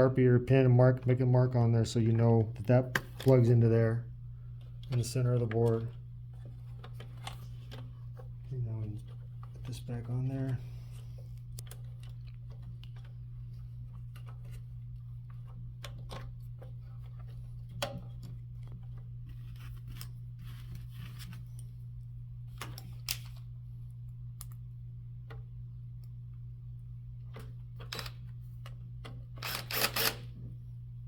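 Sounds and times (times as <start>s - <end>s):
steady low hum: 0.0s - 31.0s
screws and cover plate clicking: 29.4s - 30.2s.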